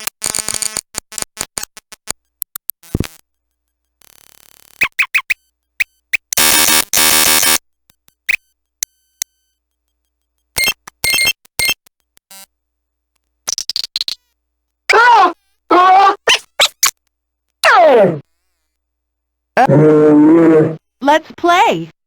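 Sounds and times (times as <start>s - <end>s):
glitching toy voice fragments: 14.9s - 16.9s.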